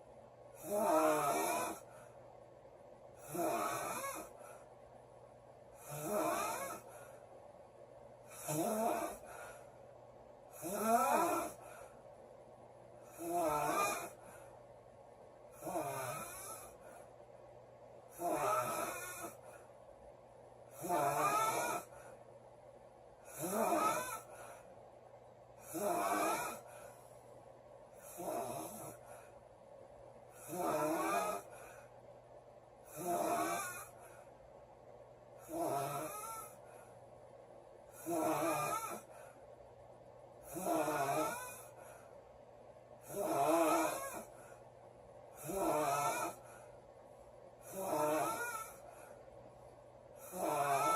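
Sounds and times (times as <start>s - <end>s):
woman snoring: 0.6s - 2.0s, 3.2s - 4.6s, 5.8s - 7.1s, 8.3s - 9.7s, 10.5s - 11.9s, 13.0s - 14.4s, 15.5s - 17.0s, 18.1s - 19.6s, 20.7s - 22.1s, 23.2s - 24.7s, 25.6s - 27.0s, 28.0s - 29.3s, 30.4s - 31.9s, 32.8s - 34.2s, 35.4s - 36.8s, 37.9s - 39.4s, 40.4s - 42.2s, 43.0s - 44.6s, 45.3s - 46.6s, 47.6s - 49.2s, 50.2s - 50.9s.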